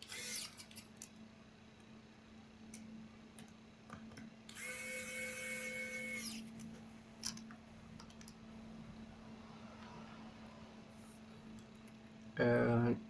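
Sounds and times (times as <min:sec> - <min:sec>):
electric screwdriver whirring: 0:00.0 - 0:00.8, 0:04.5 - 0:06.5.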